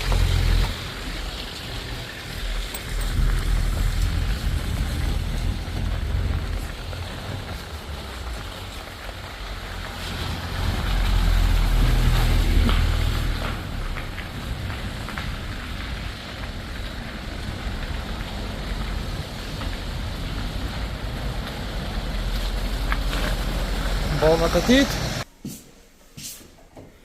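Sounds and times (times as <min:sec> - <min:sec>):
wind buffeting microphone: 0:02.3 - 0:23.8.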